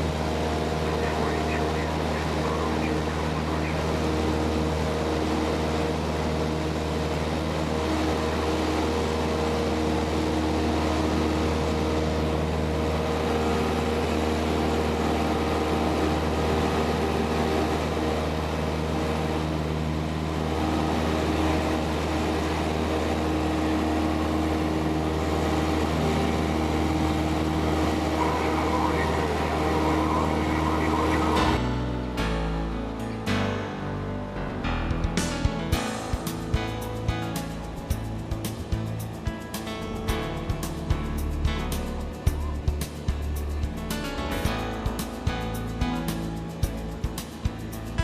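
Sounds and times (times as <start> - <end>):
light aircraft engine droning: 0.0 - 48.0.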